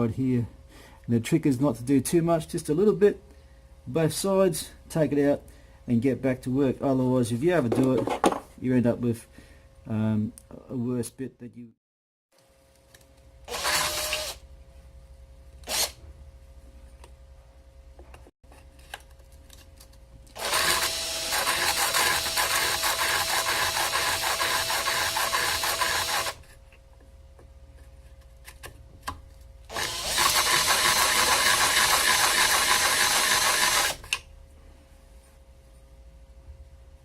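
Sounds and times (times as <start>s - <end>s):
drill sharpening a drill bit: 13.5s - 14.4s, 20.4s - 26.4s, 29.7s - 34.1s.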